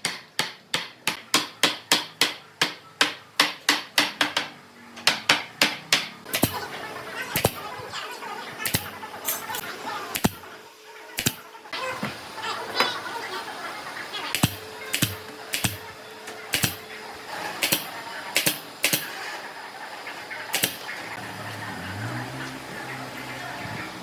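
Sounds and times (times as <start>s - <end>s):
sharp taps and knocks: 14.4s - 15.8s.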